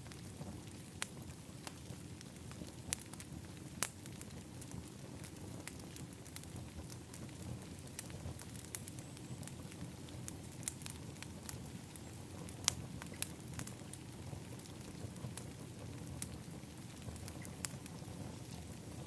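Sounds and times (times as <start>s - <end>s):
wood fire crackling and popping: 0.0s - 19.0s.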